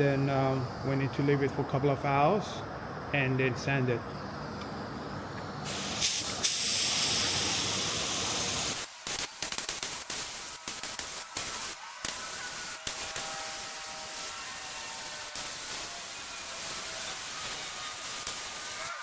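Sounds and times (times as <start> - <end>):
short choppy air bursts: 5.6 - 14.4
spray gun hissing: 5.6 - 19.0.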